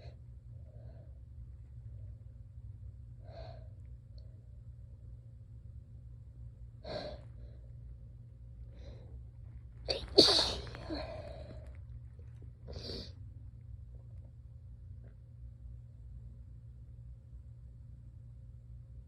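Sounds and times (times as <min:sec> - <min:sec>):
person sneezing: 0:09.9 - 0:11.3.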